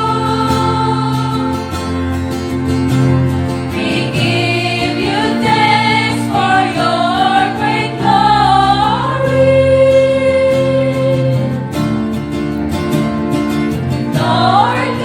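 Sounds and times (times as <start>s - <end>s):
choir singing in parts: 0.0s - 2.2s, 3.6s - 11.6s, 14.0s - 15.0s.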